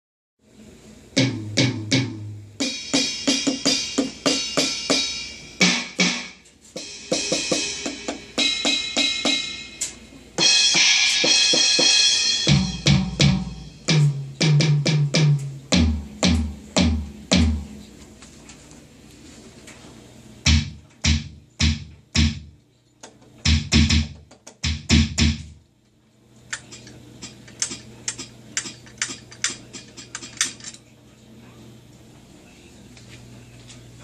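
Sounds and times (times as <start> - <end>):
electronic drum groove: 1.2 - 9.8, 10.4 - 17.9, 20.4 - 22.5, 23.4 - 25.6.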